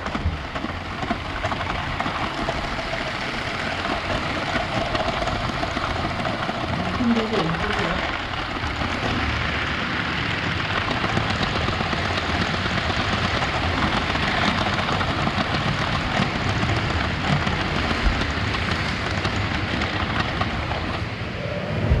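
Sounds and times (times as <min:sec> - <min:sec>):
toy train rumbling on track: 0:00.0 - 0:21.4.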